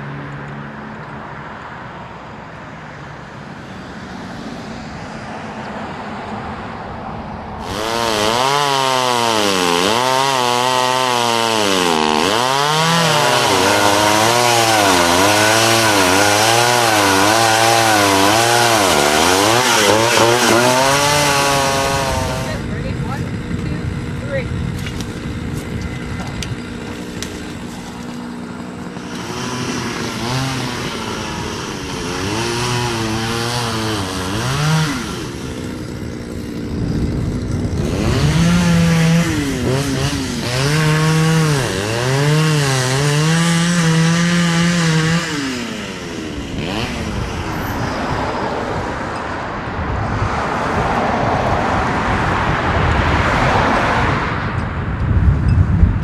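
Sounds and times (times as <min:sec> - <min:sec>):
chainsaw engine revving: 0:07.6 - 0:49.1.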